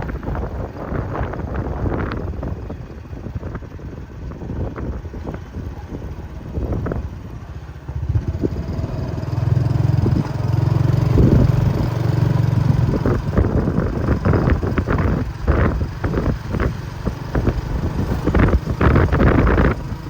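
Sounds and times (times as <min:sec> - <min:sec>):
diesel locomotive engine running: 0:00.0 - 0:20.0
wind on microphone: 0:00.0 - 0:20.0.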